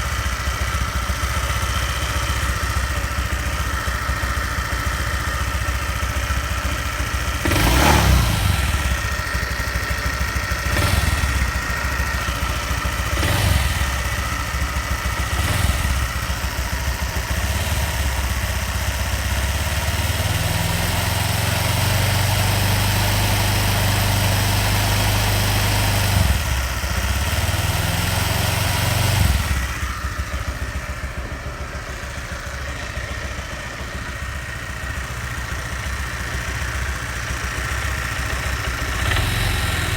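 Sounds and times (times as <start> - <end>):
scooter engine idling and revving: 0.0 - 39.9
growling engine noise: 7.4 - 9.3, 10.6 - 14.2, 38.3 - 39.9.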